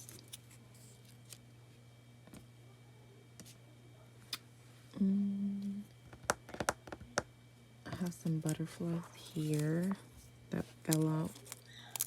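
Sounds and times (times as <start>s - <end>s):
steady low hum: 0.0s - 12.0s
person humming: 4.9s - 5.9s.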